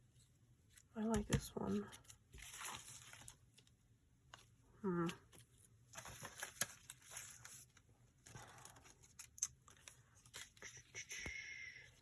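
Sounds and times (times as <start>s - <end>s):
paper rustling and clicks: 5.3s - 10.6s.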